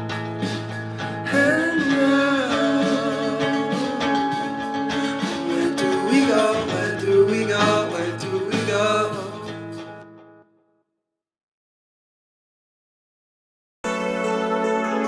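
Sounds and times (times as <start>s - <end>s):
guitar: 0.0s - 10.7s, 13.8s - 15.0s
person singing: 1.2s - 9.8s.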